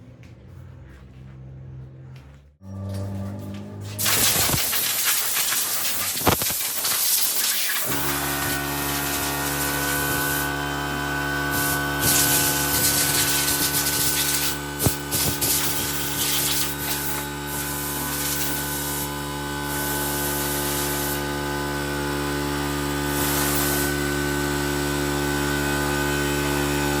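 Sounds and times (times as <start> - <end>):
angle grinder rasping against wood: 4.0 - 21.4, 23.0 - 24.2.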